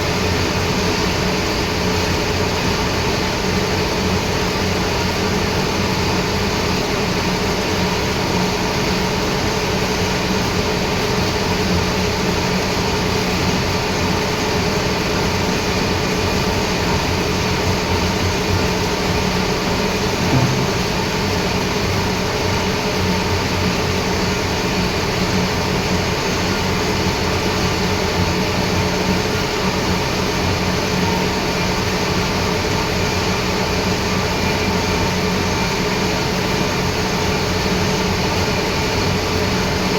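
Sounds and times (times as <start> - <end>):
short knock: 20.2 - 21.1.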